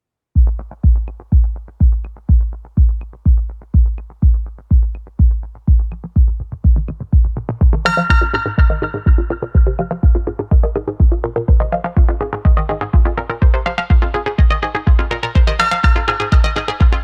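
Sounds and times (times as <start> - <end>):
electronic dance music: 0.4 - 17.0
kick drum beat: 0.4 - 17.0
synth chords: 0.4 - 17.0.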